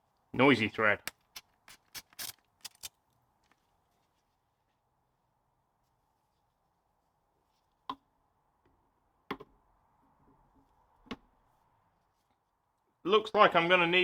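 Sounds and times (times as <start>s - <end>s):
sharp tool clicks: 1.1s - 2.9s.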